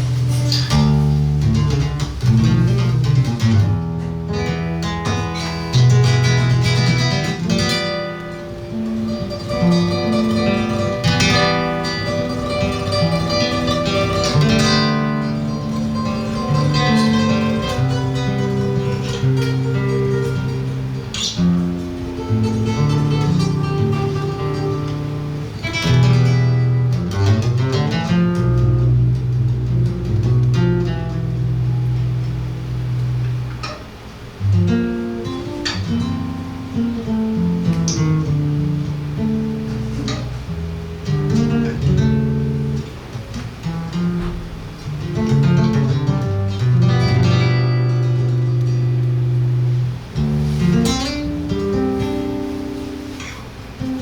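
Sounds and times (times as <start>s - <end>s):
guitar plucking bass and chords: 0.0s - 54.0s.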